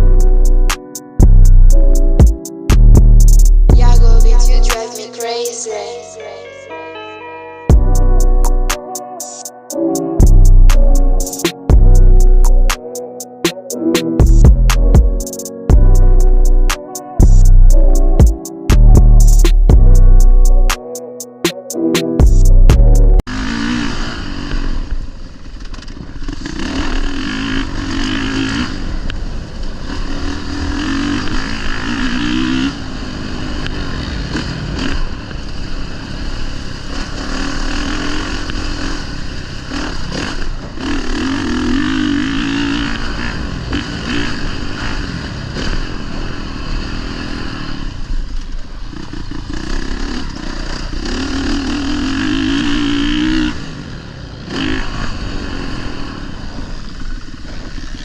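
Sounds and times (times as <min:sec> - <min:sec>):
motocross bike engine revving: 0:23.3 - 0:48.1, 0:48.9 - 0:58.0.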